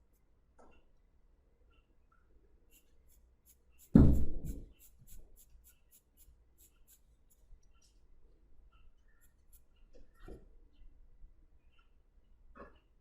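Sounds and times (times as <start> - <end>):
pencil sketching on paper: 2.7 - 7.4, 9.2 - 9.8
dull thump: 3.9 - 4.6.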